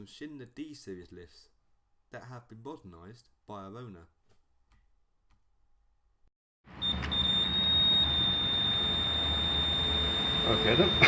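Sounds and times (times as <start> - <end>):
high-pitched electronic tone: 6.8 - 11.0.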